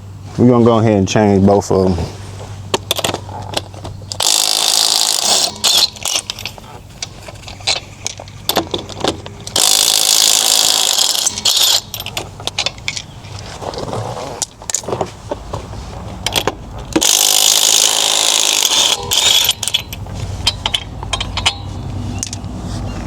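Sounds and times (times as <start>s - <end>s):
tools and metal parts clicking: 2.8s - 15.0s, 16.1s - 22.5s
cordless impact wrench: 4.1s - 6.6s, 9.5s - 12.1s, 16.9s - 20.0s.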